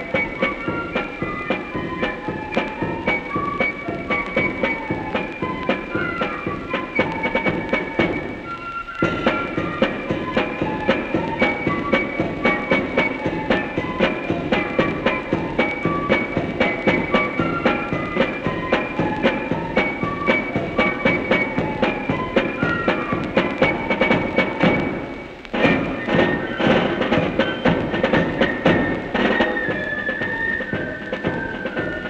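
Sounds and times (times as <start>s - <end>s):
high wind instrument melody: 0.0s - 32.0s
side drums beating: 0.0s - 32.0s.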